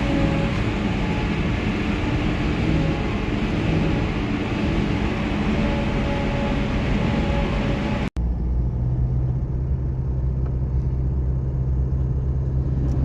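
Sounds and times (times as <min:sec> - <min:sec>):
harvesting machinery running: 0:00.0 - 0:09.0
faint mechanical whine: 0:00.0 - 0:13.0.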